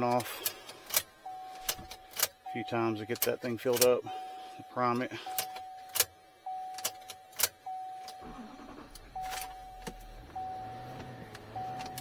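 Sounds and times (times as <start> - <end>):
electric fuel pump humming: 3.9 - 12.0
electronic dash tone: 4.2 - 12.0
ignition key clicks: 5.0 - 10.4, 11.0 - 12.0.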